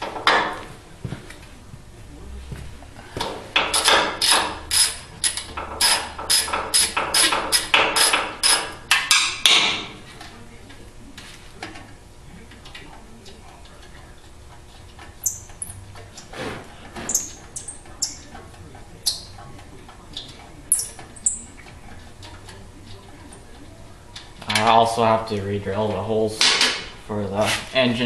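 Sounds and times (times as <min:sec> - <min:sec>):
ratchet wrench clicking: 0:03.7 - 0:08.7.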